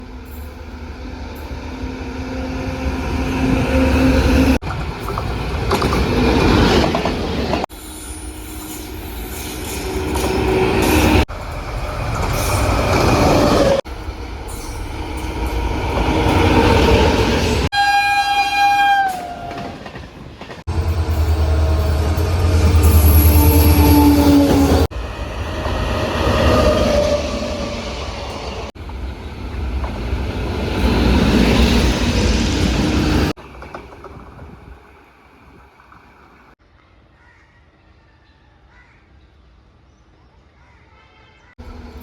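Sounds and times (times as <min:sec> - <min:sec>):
trains passing at speed: 0:00.0 - 0:36.8, 0:41.6 - 0:42.0
locomotive horn blast: 0:17.7 - 0:19.6.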